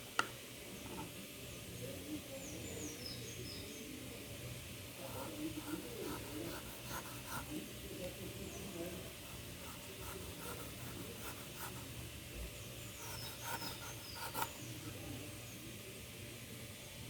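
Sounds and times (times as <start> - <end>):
knife scraping fruit: 13.0 - 14.7.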